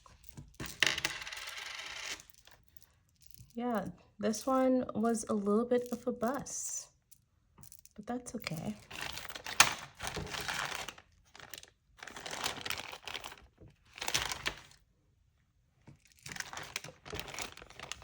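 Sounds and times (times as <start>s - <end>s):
bag crinkling: 8.8s - 14.8s, 16.1s - 18.0s.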